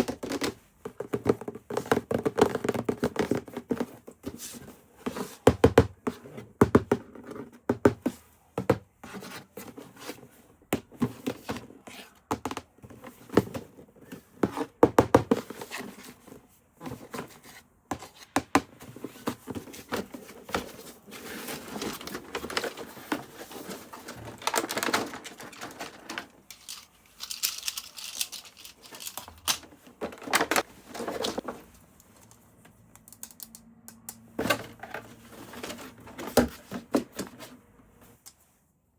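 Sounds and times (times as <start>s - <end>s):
packaging crinkling and rustling: 19.6s - 31.8s.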